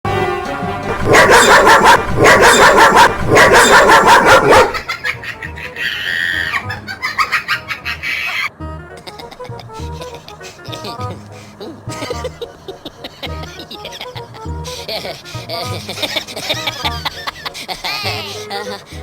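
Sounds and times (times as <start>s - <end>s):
electronic dog barking: 0.8s - 4.9s.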